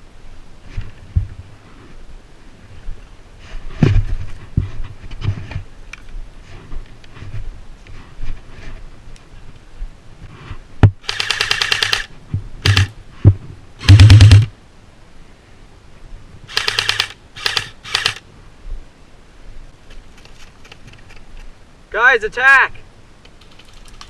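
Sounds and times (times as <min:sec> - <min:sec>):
airsoft rifle bursts: 0:11.0 - 0:12.9, 0:13.8 - 0:14.5, 0:16.5 - 0:18.2.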